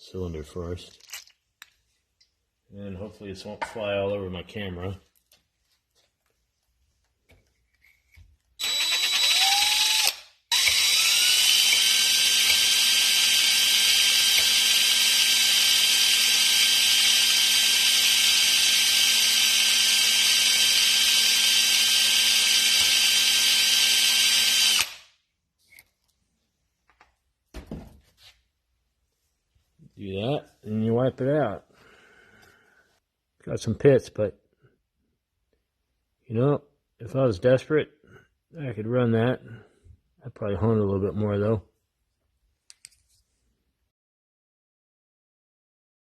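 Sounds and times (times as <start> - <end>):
electric drill whining: 8.6 - 25.1.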